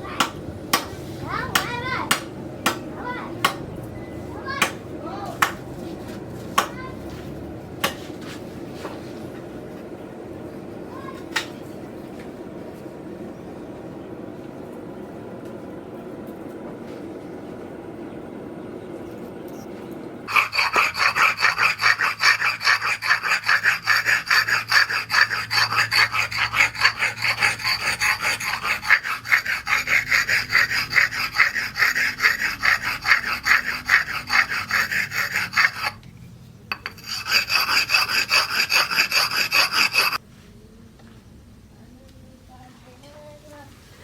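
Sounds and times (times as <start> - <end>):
file scraping metal: 0.2 - 3.6, 20.3 - 36.1, 36.7 - 40.2.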